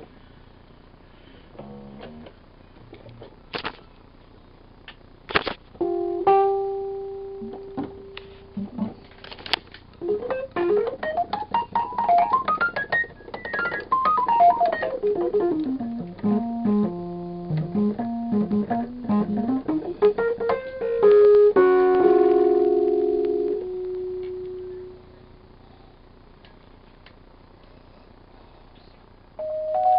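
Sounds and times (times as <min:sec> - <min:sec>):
electric piano playing: 0:05.8 - 0:09.0, 0:10.0 - 0:25.2, 0:29.4 - 0:29.9.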